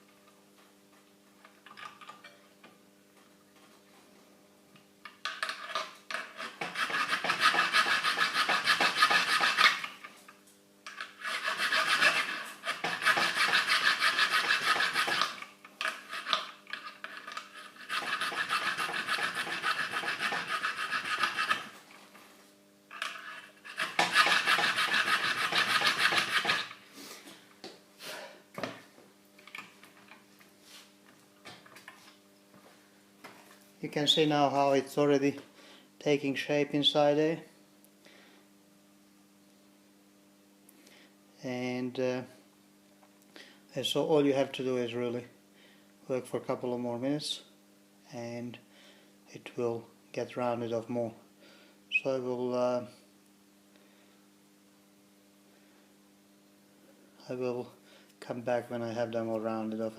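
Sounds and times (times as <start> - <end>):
metal file rasping on steel: 6.2 - 9.9, 11.1 - 15.4, 17.6 - 21.7, 23.6 - 26.8.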